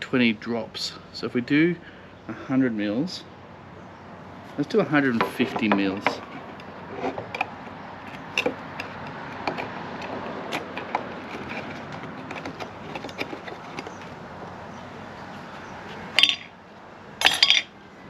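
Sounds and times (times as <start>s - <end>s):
steady background noise: 0.0s - 18.0s
containers knocking and clicking: 5.1s - 14.6s, 15.9s - 16.5s, 17.2s - 17.7s
sharp clatter: 5.2s - 14.2s, 16.1s - 16.5s, 17.2s - 17.7s.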